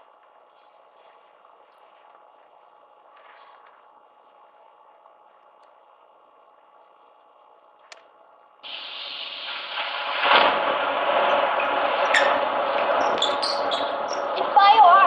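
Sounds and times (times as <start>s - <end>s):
storm sound effect over speakers: 8.6s - 13.0s.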